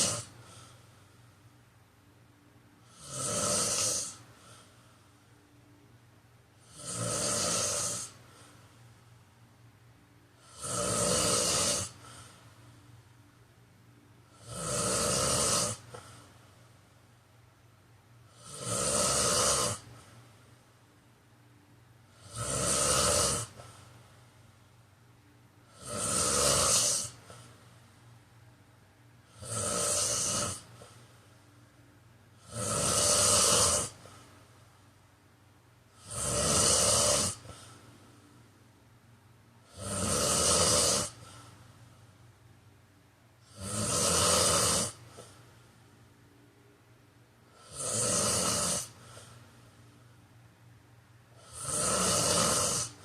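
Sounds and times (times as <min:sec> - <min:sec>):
man snoring: 0:00.0 - 0:00.8, 0:02.8 - 0:04.6, 0:06.6 - 0:08.2, 0:10.4 - 0:12.3, 0:14.3 - 0:16.2, 0:18.3 - 0:20.0, 0:22.1 - 0:23.8, 0:25.6 - 0:27.5, 0:29.3 - 0:31.0, 0:32.4 - 0:34.1, 0:35.9 - 0:37.7, 0:39.6 - 0:41.4, 0:43.4 - 0:45.3, 0:47.5 - 0:49.3, 0:51.4 - 0:53.0.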